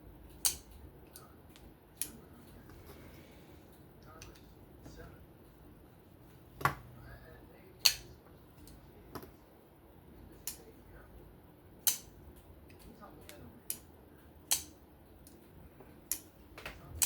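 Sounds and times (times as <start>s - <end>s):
metallic clicks and taps: 0.3s - 2.2s, 10.4s - 10.6s, 14.5s - 15.4s.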